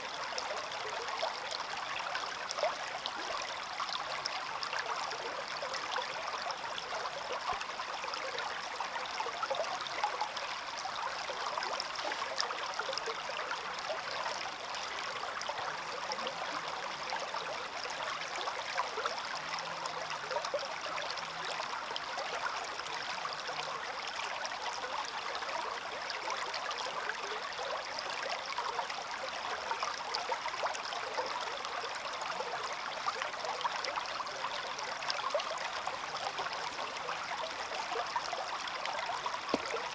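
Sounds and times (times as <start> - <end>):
stream flowing over stones: 0.0 - 39.9.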